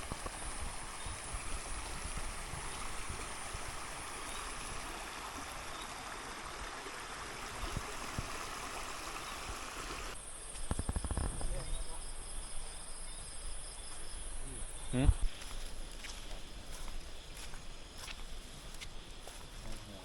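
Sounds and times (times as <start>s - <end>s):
stream water rushing: 0.0s - 10.2s.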